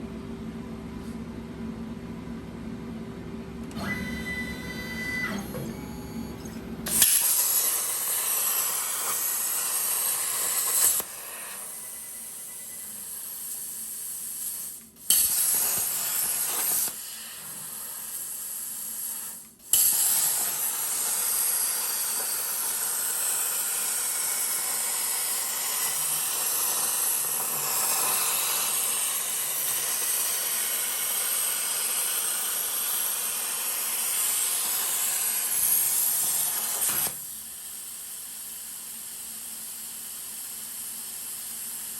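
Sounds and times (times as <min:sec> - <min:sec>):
low machine hum: 0:00.0 - 0:07.3
short beeps: 0:03.8 - 0:06.6
plasma cutter hissing: 0:06.9 - 0:41.9.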